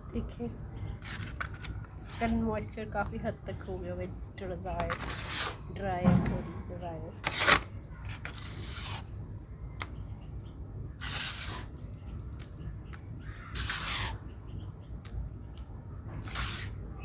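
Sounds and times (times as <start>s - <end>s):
dried dirt paste crunching: 7.2s - 16.9s
small crackling ticks: 12.1s - 13.2s.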